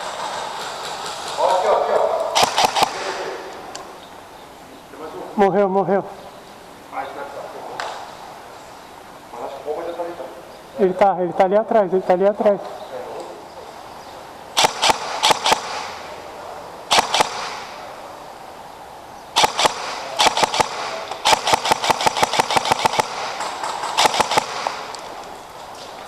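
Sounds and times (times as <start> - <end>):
airsoft guns firing: 0.1 - 3.7, 14.6 - 16.3, 16.9 - 18.0, 19.4 - 25.3.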